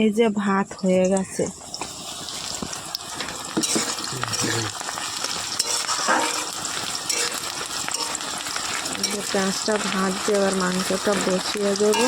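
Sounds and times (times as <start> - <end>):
onions sizzling in hot oil: 0.4 - 12.0.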